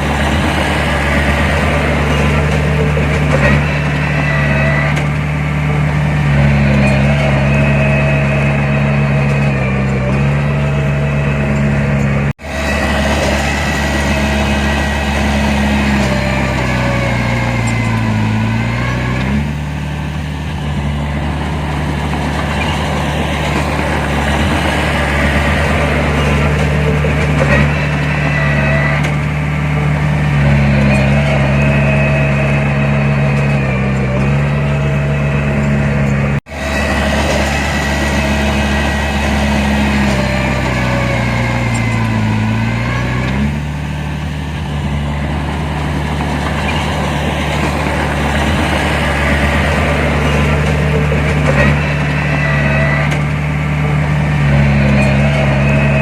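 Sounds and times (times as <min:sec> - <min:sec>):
diesel earthmoving machinery running: 0:00.0 - 0:56.0.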